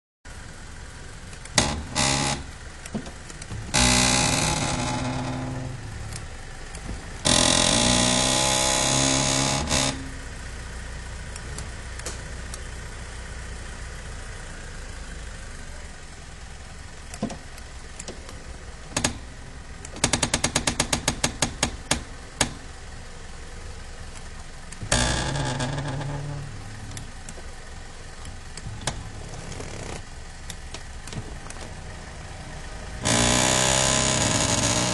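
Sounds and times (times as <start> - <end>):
seat adjuster motor running: 1.2 - 10.3, 17.0 - 22.7, 24.1 - 34.9
gearbox cranking noise: 1.3 - 10.1, 18.9 - 22.6, 24.7 - 27.5, 28.2 - 31.8, 33.0 - 34.9
clicks: 26.9 - 27.5.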